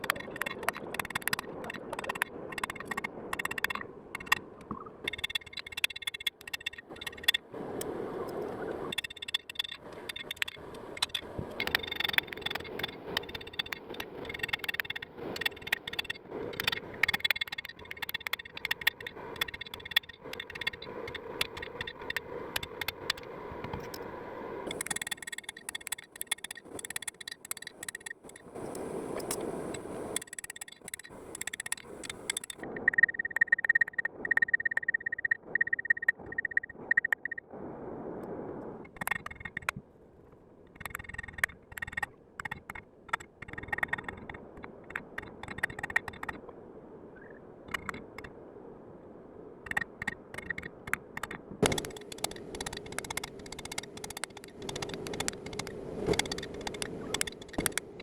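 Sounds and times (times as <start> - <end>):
hand tools tapping and scraping steel: 5.0 - 7.9, 8.9 - 24.1, 24.7 - 32.6, 49.7 - 58.0.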